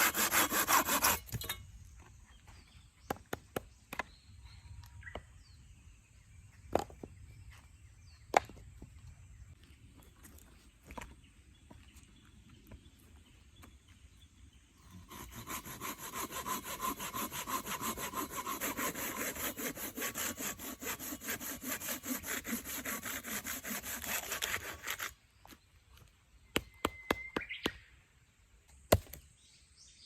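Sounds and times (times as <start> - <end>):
hand saw cutting wood: 0.0 - 1.6, 14.8 - 25.2.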